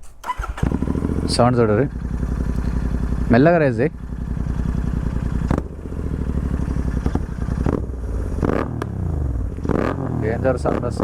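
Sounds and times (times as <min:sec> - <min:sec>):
motorcycle engine revving: 0:00.2 - 0:11.0
exhaust pops: 0:05.4 - 0:05.7, 0:06.7 - 0:11.0.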